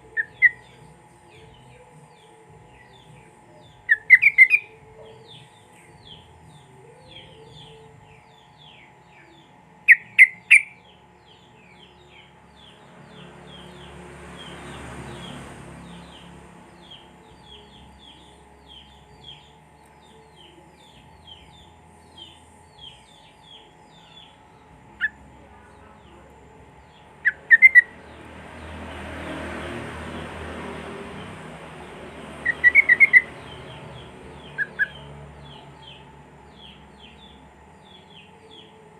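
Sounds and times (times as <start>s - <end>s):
faint steady hum: 0.0s - 14.2s, 16.2s - 28.8s
bird chattering: 0.1s - 0.8s, 3.9s - 6.2s, 9.9s - 10.8s, 27.0s - 28.2s, 32.4s - 38.7s.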